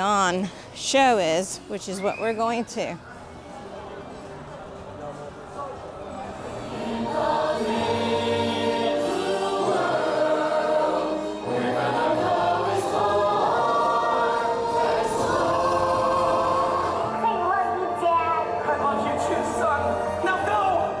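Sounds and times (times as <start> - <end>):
voices singing together: 6.5 - 21.0
recorded musical accompaniment: 6.6 - 21.0.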